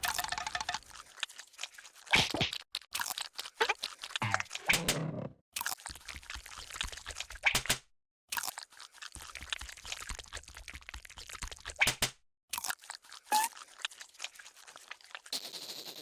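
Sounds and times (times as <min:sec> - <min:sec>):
cartoon crunching and crackling: 0:02.1 - 0:04.9, 0:08.3 - 0:12.0, 0:12.6 - 0:15.3.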